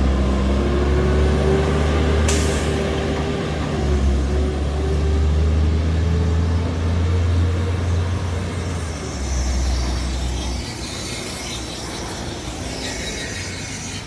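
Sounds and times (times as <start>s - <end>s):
diesel engine droning: 0.0s - 14.0s
faint hiss: 7.8s - 14.0s.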